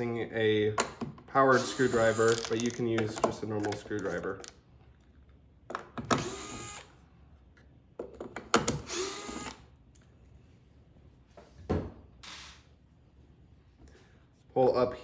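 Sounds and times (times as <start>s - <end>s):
powered screwdriver whirring: 1.5s - 2.8s, 6.1s - 7.0s, 8.7s - 9.6s.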